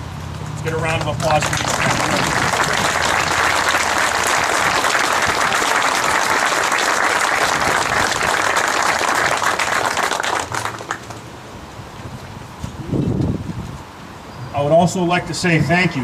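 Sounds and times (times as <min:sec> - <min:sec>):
crowd applauding: 0:00.7 - 0:11.2.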